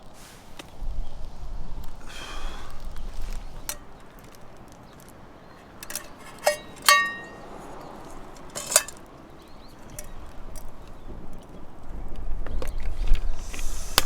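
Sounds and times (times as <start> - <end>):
metal camp gear clinking: 3.2 - 11.0
thin metal knocks ringing: 5.6 - 7.6, 8.4 - 9.0.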